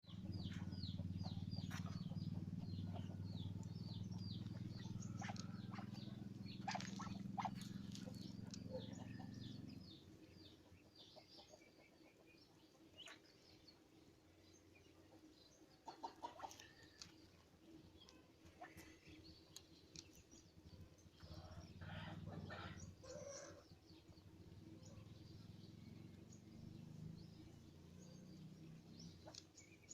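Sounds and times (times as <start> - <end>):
steady low hum: 0.0 - 10.9
ducks peeping: 0.1 - 12.2, 15.8 - 17.1
ducks quacking: 4.8 - 9.0.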